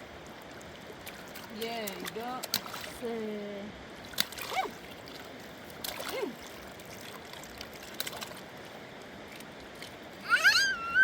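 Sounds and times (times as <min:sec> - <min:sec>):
mountain river rushing: 0:08.4 - 0:11.0
loud high wavering call: 0:10.2 - 0:11.0.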